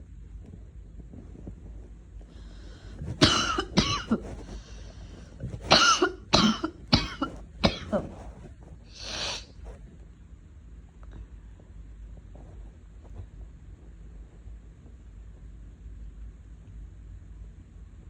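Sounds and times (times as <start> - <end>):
noisy breath: 2.2 - 3.2, 4.1 - 5.7, 8.0 - 9.8
person coughing: 3.0 - 4.8, 5.6 - 8.2.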